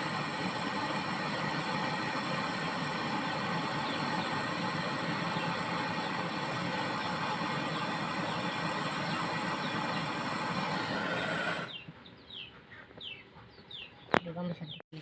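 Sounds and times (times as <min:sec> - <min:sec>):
torch flame hissing: 0:00.0 - 0:11.8.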